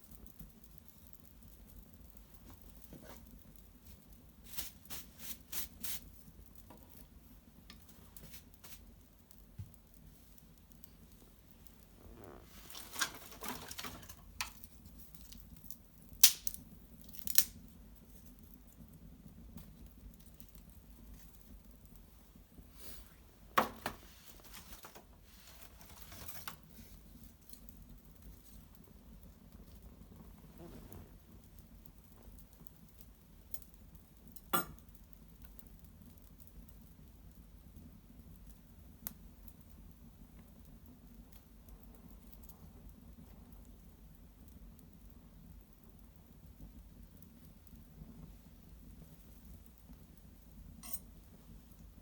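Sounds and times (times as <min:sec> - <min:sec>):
twig fire crackling: 0:00.0 - 0:52.0
sharp pop from fire: 0:16.2 - 0:17.6, 0:34.5 - 0:34.8.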